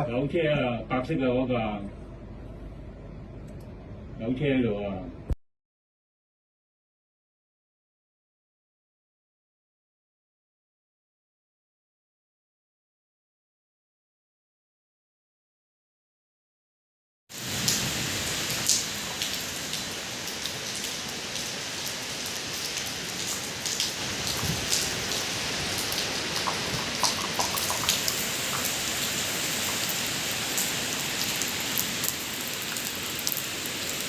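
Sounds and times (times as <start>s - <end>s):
heavy rain hissing: 17.3s - 34.0s
raindrops ticking on hard surfaces: 17.4s - 34.0s.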